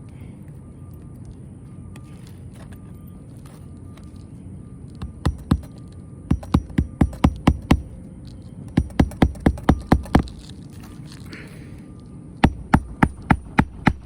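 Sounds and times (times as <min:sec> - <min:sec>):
hammer driving roofing nails: 0:05.0 - 0:07.9, 0:08.7 - 0:10.4, 0:12.4 - 0:14.0.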